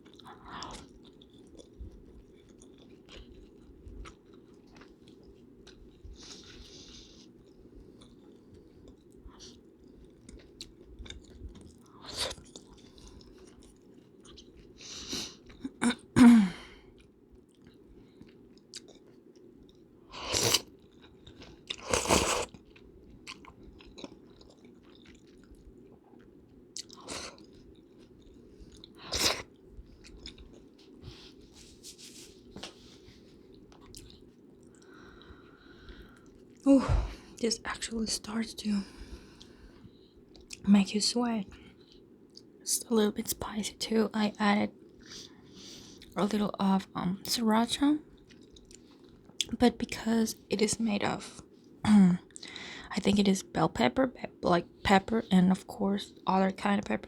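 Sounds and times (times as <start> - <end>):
chewing and mouth noises: 0.0 - 16.0, 16.9 - 36.7, 39.2 - 40.6, 48.1 - 50.0
steady low background noise: 0.0 - 57.0.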